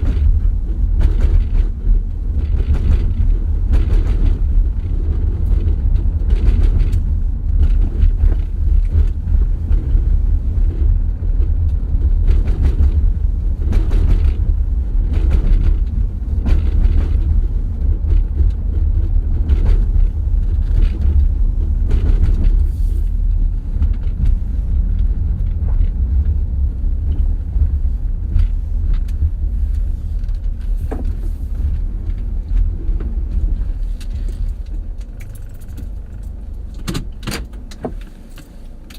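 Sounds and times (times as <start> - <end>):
car knocks and rattles: 0.0 - 38.9
tyres rumbling on bumpy road: 0.0 - 38.9.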